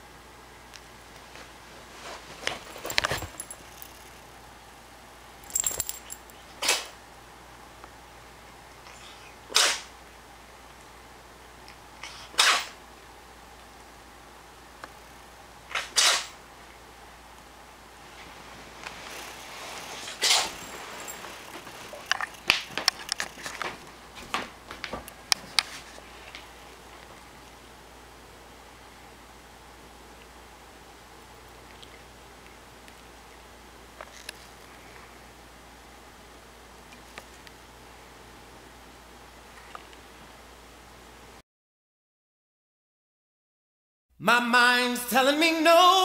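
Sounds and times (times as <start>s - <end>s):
cat sneezing: 6.6s - 6.9s, 8.9s - 9.9s, 12.0s - 12.8s, 15.7s - 16.4s, 20.0s - 20.6s
cat snorting: 12.0s - 12.7s, 19.9s - 20.6s.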